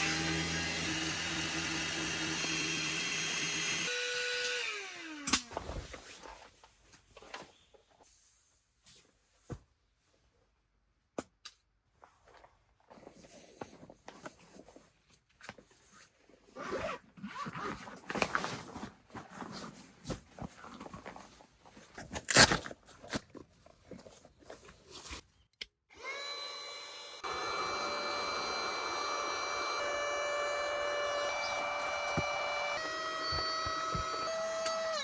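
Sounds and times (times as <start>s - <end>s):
clatter of objects being handled: 17.4s - 25.5s.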